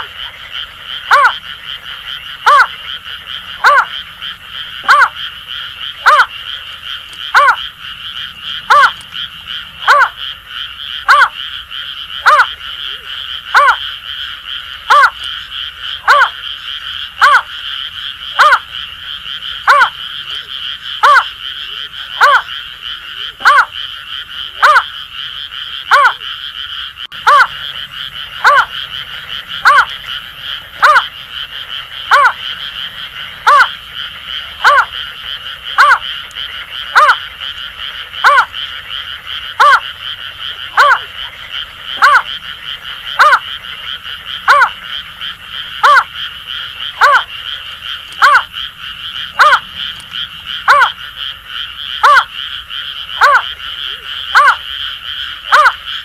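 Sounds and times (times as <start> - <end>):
frogs calling chorus: 0.0 - 56.0
bird hooting calls: 1.1 - 1.4, 2.4 - 2.8, 3.6 - 3.9, 4.8 - 5.2, 6.0 - 6.3, 7.1 - 10.2, 11.0 - 11.4, 12.2 - 13.8, 14.9 - 15.3, 16.0 - 16.4, 18.4 - 18.7, 19.6 - 23.7, 24.5 - 24.9, 25.9 - 26.2, 27.1 - 31.4, 32.0 - 36.1, 36.8 - 37.2, 38.2 - 38.6, 39.6 - 42.4, 43.1 - 51.2, 51.9 - 52.3, 53.2 - 54.6.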